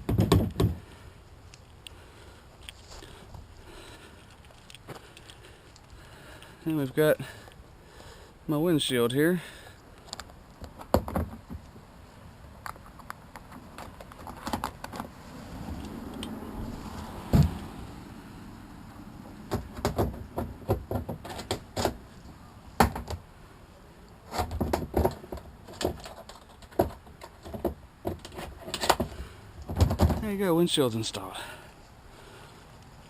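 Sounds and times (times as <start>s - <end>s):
windshield clicking and rattling: 12.7s - 17.7s, 19.3s - 22.0s, 24.3s - 30.4s.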